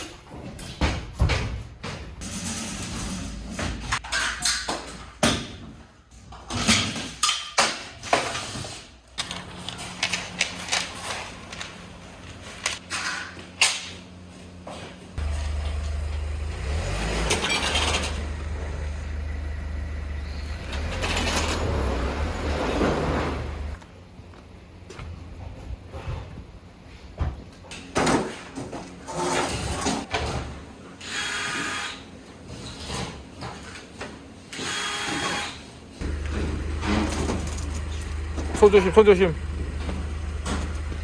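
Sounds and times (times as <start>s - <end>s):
renovation knocks and clatters: 0.0s - 14.1s, 36.0s - 41.0s.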